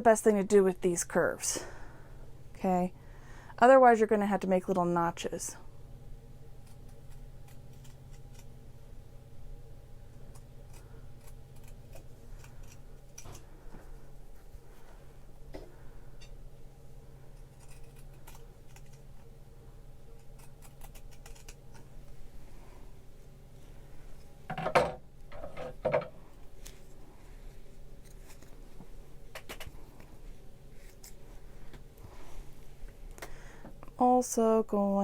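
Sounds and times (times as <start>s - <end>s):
scissors snipping fabric: 17.4s - 19.1s, 20.2s - 21.8s.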